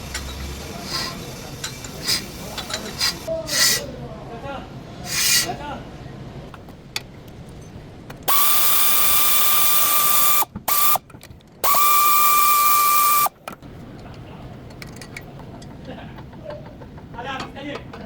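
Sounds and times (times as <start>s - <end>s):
pneumatic wrench whine: 8.3s - 11.0s, 11.6s - 13.3s.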